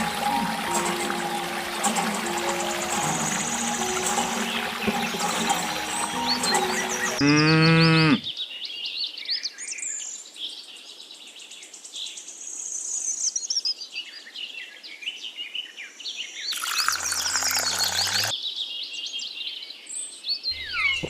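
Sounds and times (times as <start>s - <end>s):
birds chirping: 0.0s - 8.4s, 16.5s - 18.3s, 20.5s - 21.0s
cow mooing: 7.2s - 8.3s.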